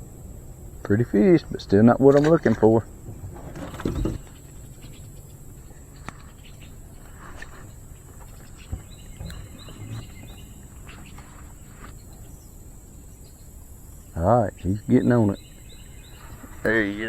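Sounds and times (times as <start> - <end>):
bird calling high notes: 14.8 - 17.0.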